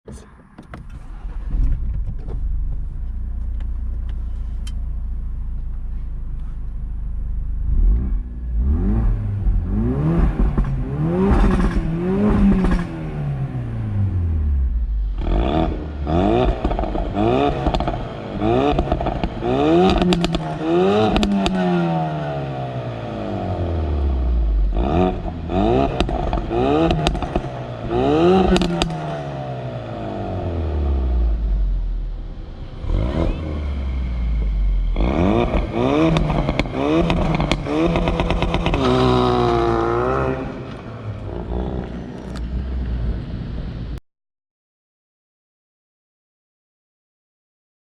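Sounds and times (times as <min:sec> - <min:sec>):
car engine revving: 0:05.0 - 0:43.9
exhaust pops and crackles: 0:16.4 - 0:21.7, 0:25.8 - 0:29.0, 0:35.4 - 0:43.4.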